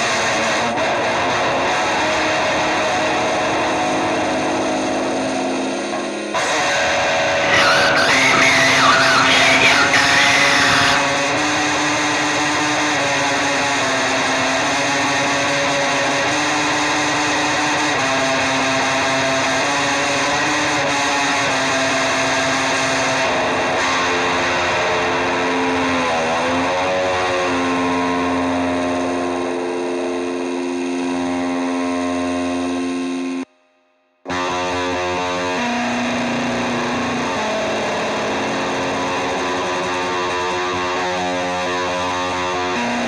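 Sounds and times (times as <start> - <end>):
distorted electric guitar: 0.0 - 33.5, 34.3 - 43.0
dense noisy wash: 7.1 - 11.4.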